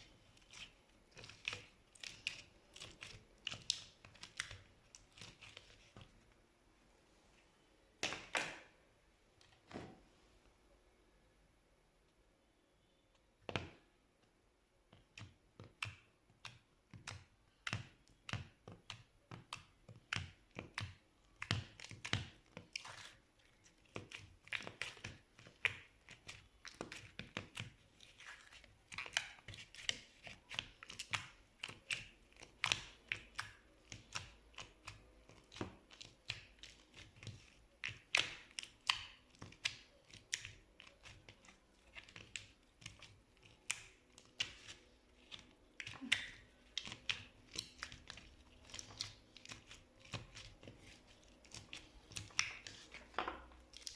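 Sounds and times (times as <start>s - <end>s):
slime clicking and popping: 51.4s - 52.8s.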